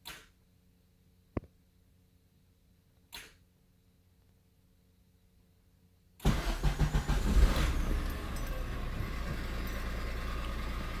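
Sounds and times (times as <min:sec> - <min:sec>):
car engine idling: 0:06.2 - 0:11.0
engine starter cranking: 0:06.2 - 0:11.0.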